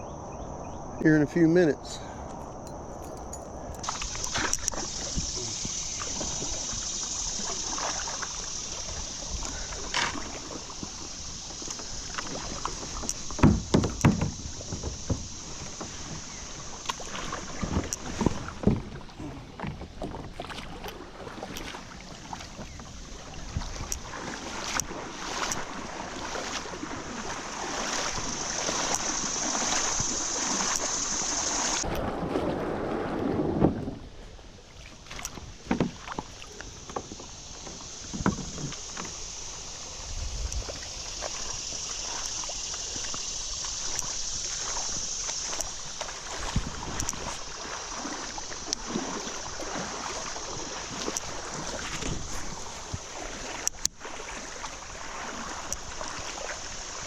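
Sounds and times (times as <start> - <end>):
steady high hiss: 1.0 - 19.1, 22.8 - 31.9, 36.0 - 57.0
paddle splashes: 3.0 - 57.0
knocks against kayak hull: 13.3 - 16.2, 35.3 - 37.3, 38.0 - 39.2.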